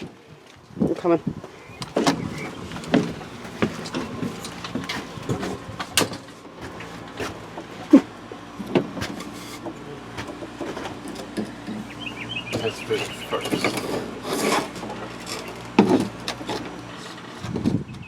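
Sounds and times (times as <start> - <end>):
plywood panel knocking and scraping: 1.8 - 11.9, 12.5 - 17.8.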